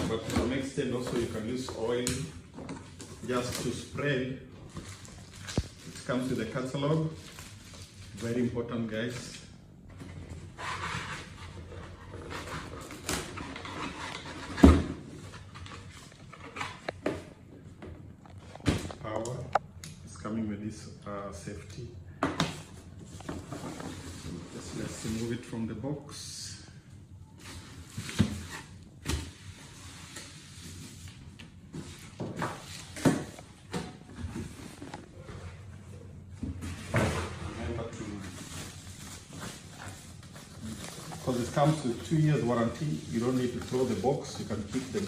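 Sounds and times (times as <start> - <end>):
cardboard packaging rustling: 37.6 - 45.0.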